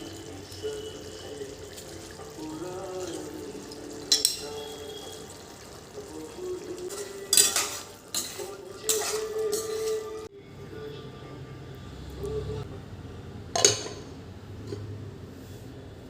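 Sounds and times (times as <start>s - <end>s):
soft background music: 0.0s - 13.9s
dishes and utensils clattering: 2.9s - 4.9s, 6.8s - 10.3s, 13.6s - 14.9s.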